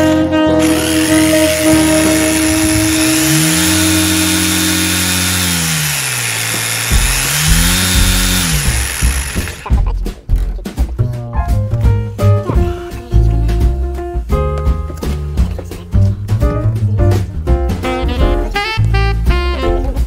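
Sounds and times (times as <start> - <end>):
rotary hammer motor running: 0.6 - 9.8.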